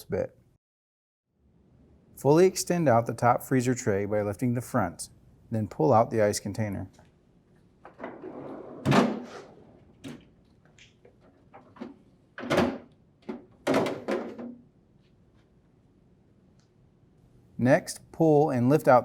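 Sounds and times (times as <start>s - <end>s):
plastic tray sliding: 7.9s - 10.0s
plastic clunks and knocks: 11.5s - 14.6s.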